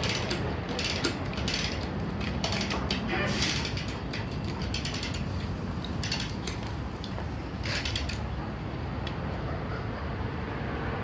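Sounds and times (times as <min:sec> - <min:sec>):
winch ratchet clicking: 0:00.0 - 0:08.3.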